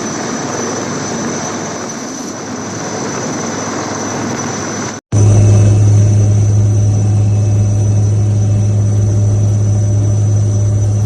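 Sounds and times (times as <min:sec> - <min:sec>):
aircraft engine whine: 0:00.0 - 0:11.0
deep engine hum: 0:05.1 - 0:11.0.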